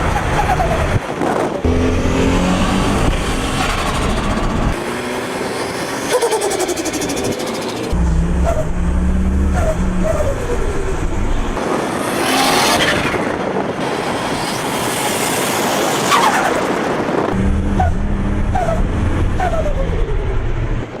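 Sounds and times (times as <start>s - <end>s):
car engine revving: 1.6s - 13.0s, 17.3s - 20.8s.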